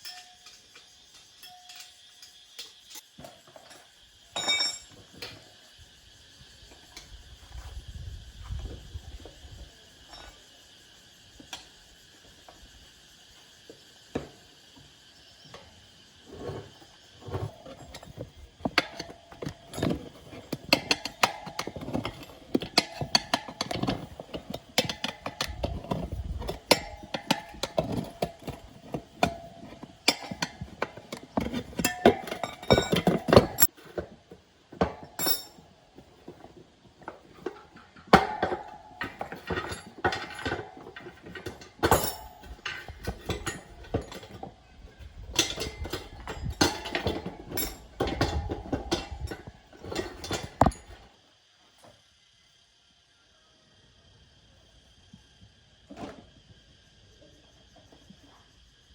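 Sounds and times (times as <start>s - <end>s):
metal tools clinking: 0.0s - 5.4s, 17.2s - 33.7s, 35.0s - 35.6s, 38.4s - 51.0s.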